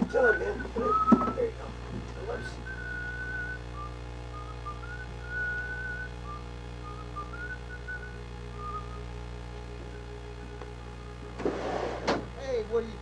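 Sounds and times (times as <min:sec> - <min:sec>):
low electrical hum: 0:00.0 - 0:13.0
person whistling a tune: 0:00.1 - 0:01.4, 0:02.6 - 0:09.0.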